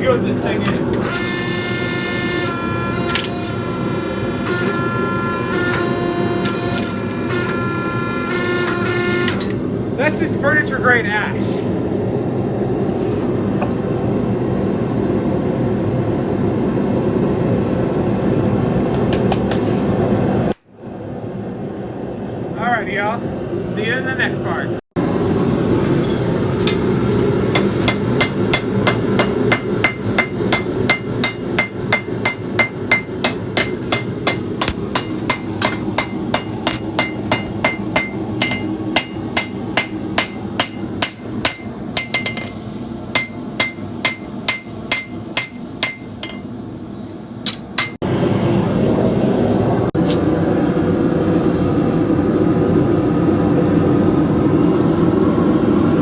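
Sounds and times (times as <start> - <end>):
hammer striking steel on anvil: 27.5 - 46.5, 47.5 - 48.0.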